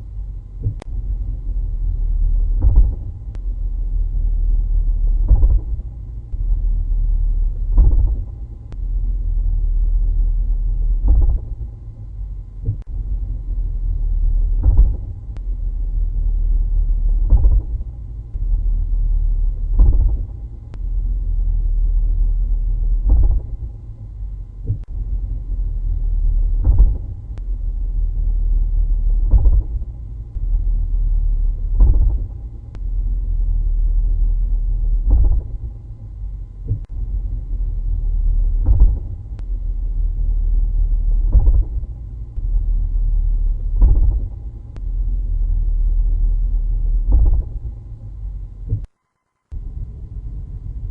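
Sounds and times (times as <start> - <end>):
drivetrain low rumble: 0.0 - 50.9
driveline thumps: 19.6 - 20.9, 31.5 - 32.9, 35.0 - 37.0, 37.9 - 42.7, 43.4 - 45.0, 47.0 - 48.9.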